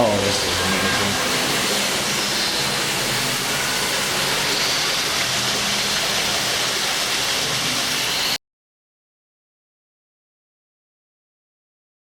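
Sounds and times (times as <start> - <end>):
waterfall roaring: 0.0 - 8.4.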